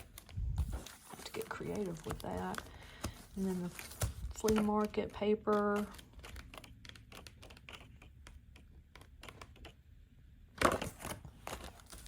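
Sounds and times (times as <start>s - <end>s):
packaging rustle: 0.0s - 4.7s.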